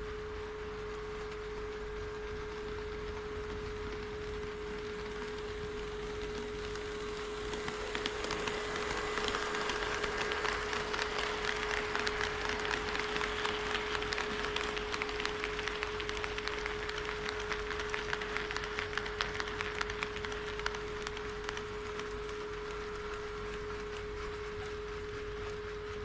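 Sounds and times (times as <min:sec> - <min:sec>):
steady hum-like tone: 0:00.0 - 0:17.4
model train wheels clicking on rails: 0:00.6 - 0:26.0.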